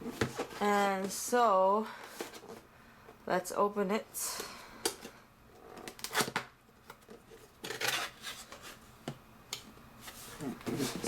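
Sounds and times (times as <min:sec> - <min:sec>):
cardboard scraping and rustling: 0:00.0 - 0:01.2, 0:10.0 - 0:11.0.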